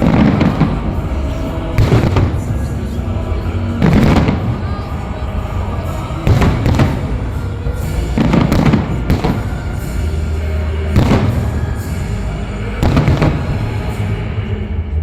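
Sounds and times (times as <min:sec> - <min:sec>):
fireworks bursting with loud bangs: 0:00.0 - 0:14.2
background music: 0:00.0 - 0:15.0.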